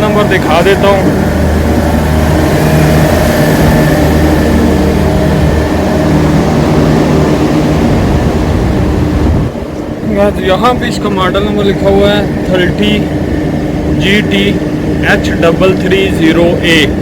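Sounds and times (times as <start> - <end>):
air-cooled chiller humming: 0.0 - 17.0.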